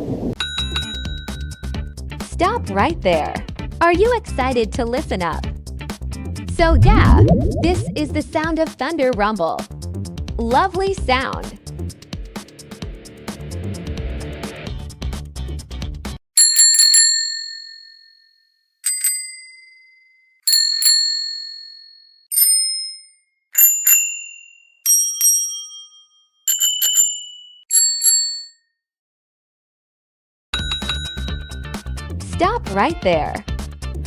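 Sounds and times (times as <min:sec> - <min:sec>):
bicycle bell ringing: 0:00.4 - 0:01.8, 0:16.4 - 0:28.6, 0:30.6 - 0:32.0
background music: 0:00.6 - 0:16.2, 0:30.6 - 0:34.0.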